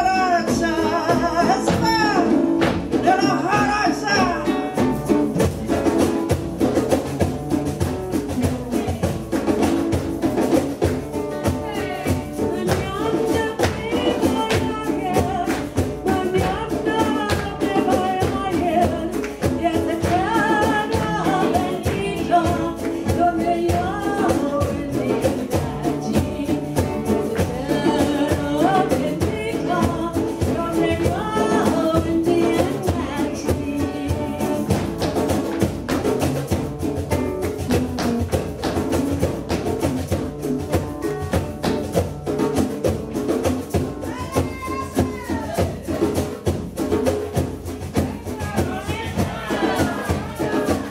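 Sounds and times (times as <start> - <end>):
person singing: 0.0 - 4.8, 11.4 - 34.9, 44.0 - 46.1, 47.8 - 50.9
flamenco guitar: 0.0 - 50.9.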